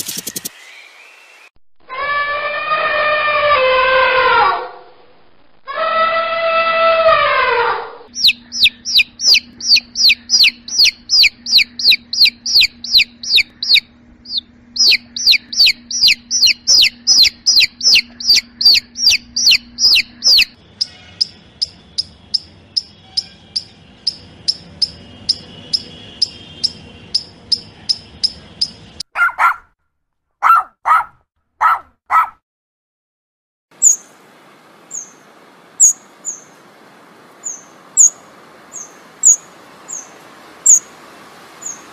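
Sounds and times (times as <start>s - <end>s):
low-pitched bird calls: 5.8s - 29.6s
bird chirping: 8.1s - 29.5s, 33.8s - 34.1s, 34.9s - 35.2s, 35.8s - 36.6s, 37.4s - 40.9s, 41.6s - 41.9s.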